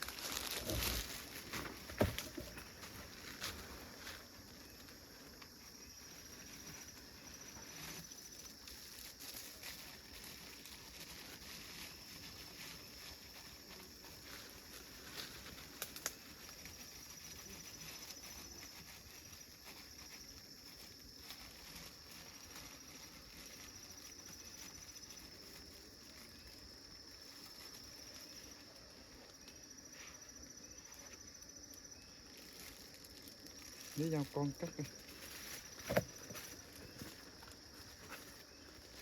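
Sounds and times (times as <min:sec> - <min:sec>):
faint high-pitched insect trilling: 0:00.0 - 0:39.0
forest ambience: 0:00.0 - 0:39.0.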